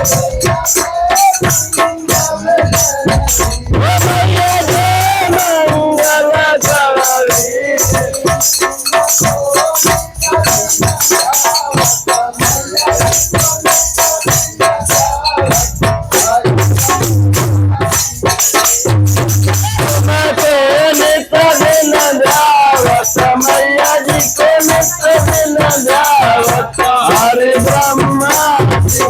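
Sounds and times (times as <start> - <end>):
shaker and tambourine percussion: 0.0 - 29.0
heavy bass beats: 1.7 - 6.0.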